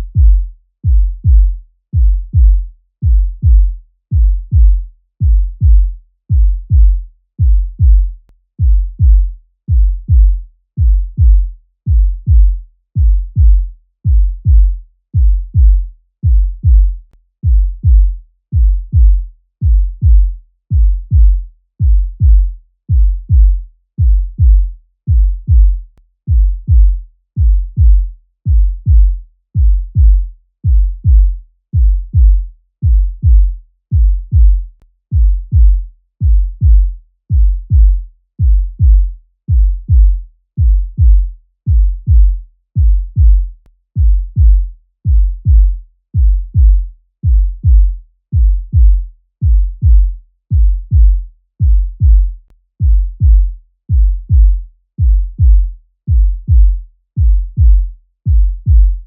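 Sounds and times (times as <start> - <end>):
heartbeat thumps: 0.0 - 59.0.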